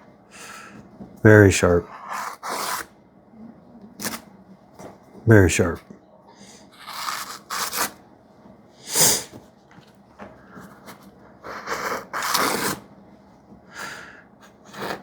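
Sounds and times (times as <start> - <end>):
knife slicing paper: 2.1 - 2.9, 6.8 - 8.0, 11.7 - 12.8.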